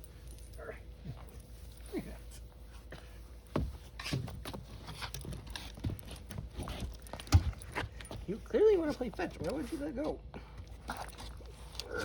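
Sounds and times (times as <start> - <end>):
dogs scuffling: 3.6 - 10.0.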